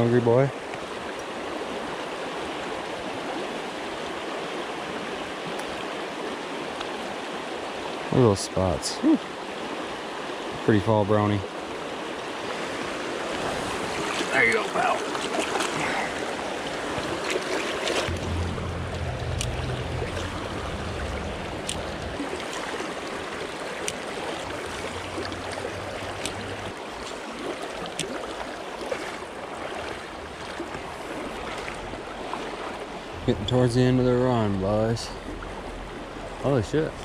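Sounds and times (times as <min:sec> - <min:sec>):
shallow water flowing: 0:00.0 - 0:37.0
small water splashes: 0:11.5 - 0:33.2
low rumble: 0:18.1 - 0:22.4, 0:33.0 - 0:37.0.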